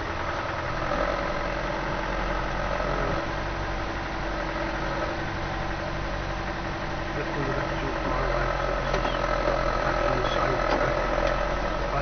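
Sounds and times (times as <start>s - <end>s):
engine running at low revs: 0.0s - 12.0s.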